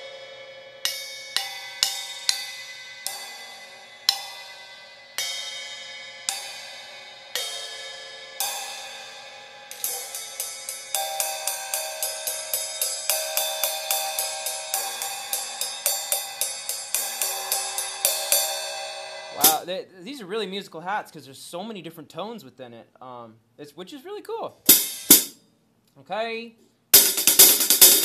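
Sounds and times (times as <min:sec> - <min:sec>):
hi-hat cymbal struck with stick: 0:00.0 - 0:19.6, 0:24.7 - 0:25.4, 0:27.0 - 0:28.0.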